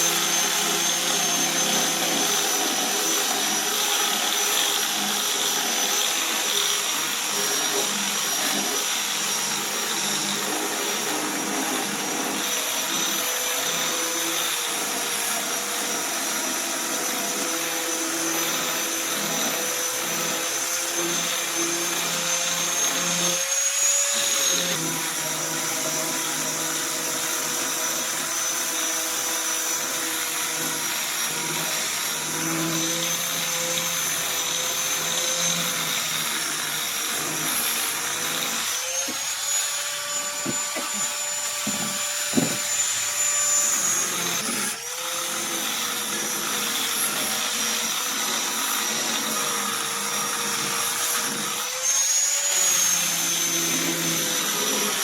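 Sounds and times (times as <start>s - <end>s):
power tool motor whining: 0.0s - 55.0s
sharp knocks: 41.6s - 42.7s.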